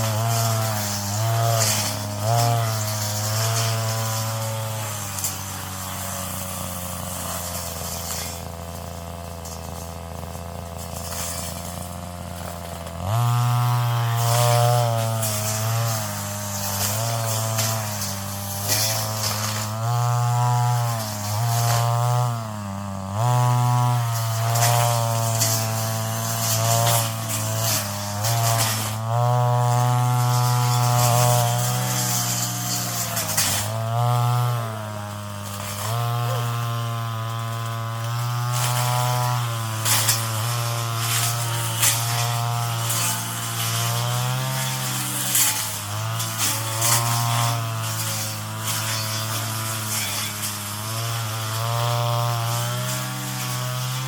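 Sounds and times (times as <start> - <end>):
brush cutter engine at high revs: 0.0 - 54.0.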